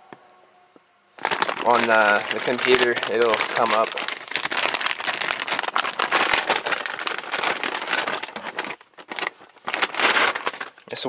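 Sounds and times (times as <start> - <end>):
rustling and crackling handling noise: 1.2 - 11.0.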